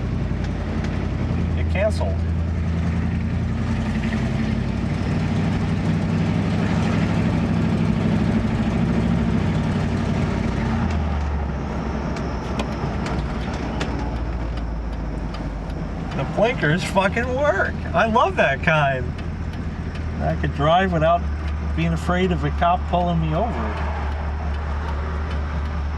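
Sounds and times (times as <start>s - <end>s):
car engine running: 0.0s - 25.9s
sharp clicks: 19.0s - 25.9s.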